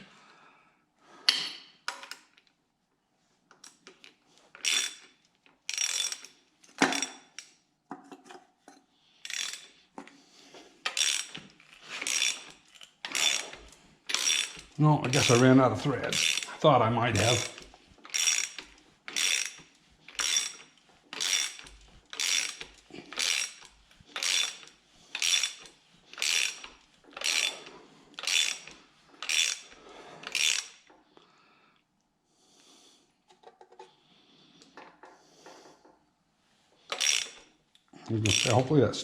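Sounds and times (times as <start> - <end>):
ratchet wrench strokes: 4.6 - 7.5, 9.2 - 9.8, 10.8 - 30.9, 36.9 - 37.5, 38.2 - 38.7.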